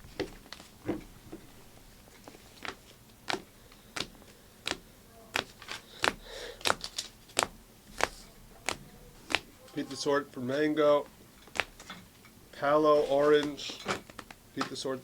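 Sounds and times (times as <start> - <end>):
soft card rustle: 0.0 - 15.0
cards clicking and snapping: 2.2 - 9.8, 11.4 - 12.0, 13.3 - 14.8.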